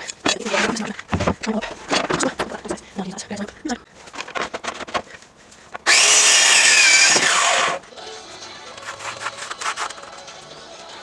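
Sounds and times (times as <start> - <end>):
power tool motor whine: 5.8 - 7.8.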